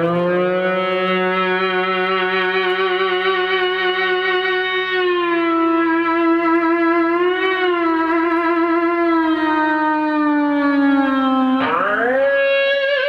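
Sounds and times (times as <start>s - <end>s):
sustained electric guitar note: 10.8s - 13.0s.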